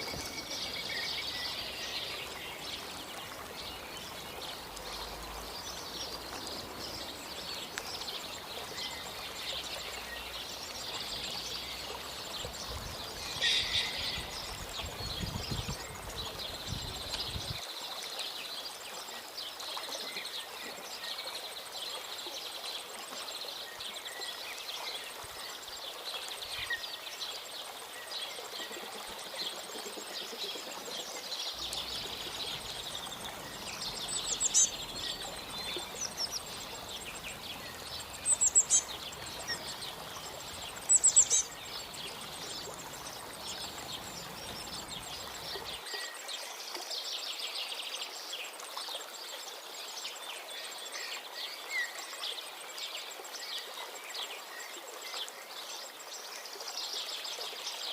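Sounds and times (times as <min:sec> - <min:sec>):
birds chirping: 0:00.0 - 0:17.6, 0:31.5 - 0:46.1
sharp bird calls: 0:13.1 - 0:15.0.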